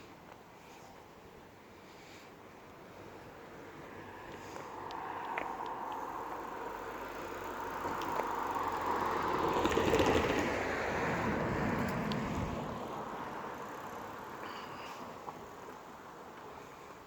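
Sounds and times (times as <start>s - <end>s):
vehicle passing by: 3.9s - 14.4s.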